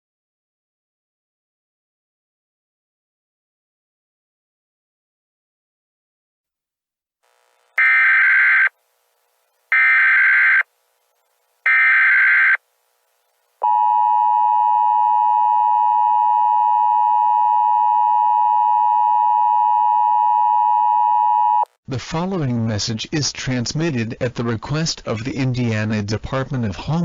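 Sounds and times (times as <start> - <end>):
warbling data tone bursts: 7.4 - 8.7, 9.7 - 10.6, 11.6 - 12.6
two-tone attention signal: 7.8 - 8.7, 9.7 - 10.6, 11.7 - 12.6.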